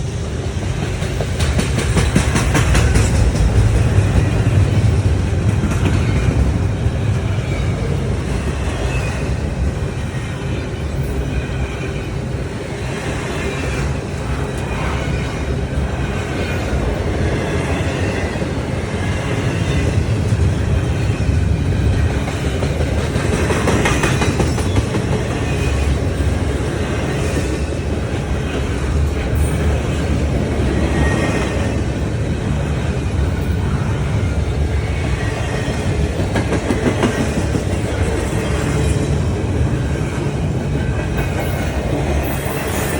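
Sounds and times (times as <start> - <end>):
train rumbling past: 0.0 - 42.9
train wheel clicks: 0.6 - 6.4, 22.0 - 26.4, 35.7 - 39.2.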